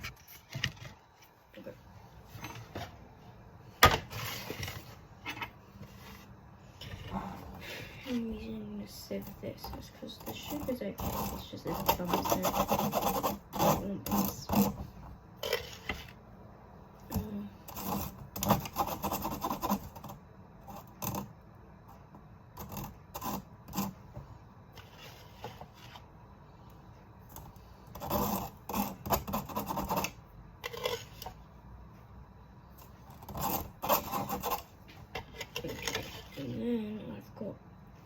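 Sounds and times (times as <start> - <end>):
spoon scraping sugar through sieve: 9.6 - 14.8, 15.4 - 16.2, 24.8 - 26.1, 27.9 - 31.4, 33.2 - 36.6.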